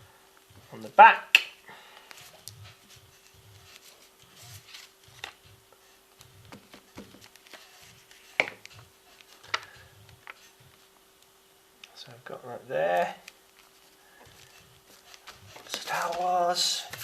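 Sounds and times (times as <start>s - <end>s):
paper rustling: 1.8s - 10.9s, 13.0s - 17.0s
paper tapping on table: 6.4s - 7.4s.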